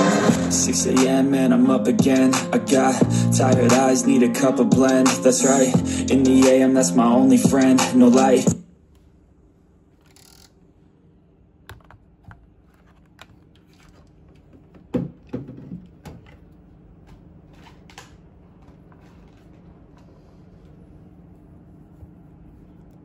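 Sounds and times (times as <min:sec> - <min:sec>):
faint steady hum: 0:00.0 - 0:23.0
equipment clicks and knocks: 0:11.7 - 0:16.5.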